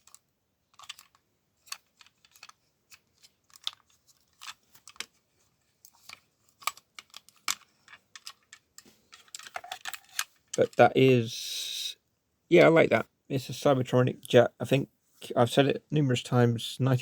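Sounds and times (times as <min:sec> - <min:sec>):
plastic toy parts clicking and snapping: 0:00.0 - 0:05.2, 0:05.8 - 0:10.8.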